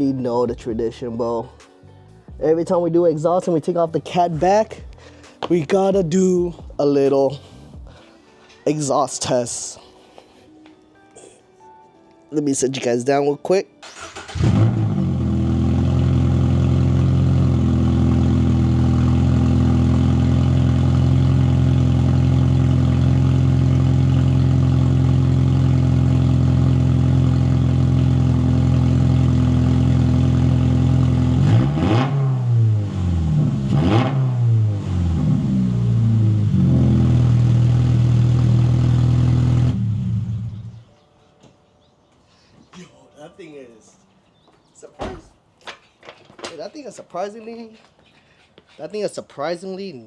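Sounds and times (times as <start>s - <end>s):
car engine idling and revving: 14.0s - 40.8s.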